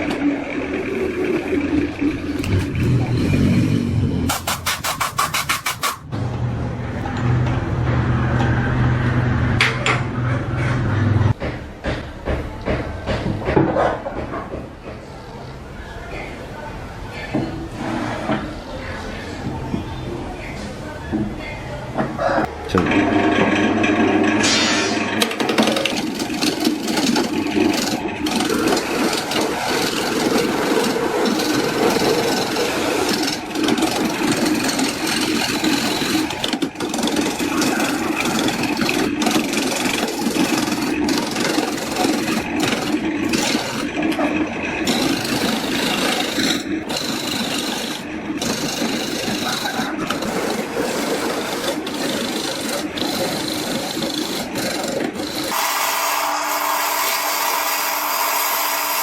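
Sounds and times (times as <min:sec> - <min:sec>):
tool scraping on wood: 0:02.0 - 0:03.7, 0:04.3 - 0:06.1, 0:24.4 - 0:57.8.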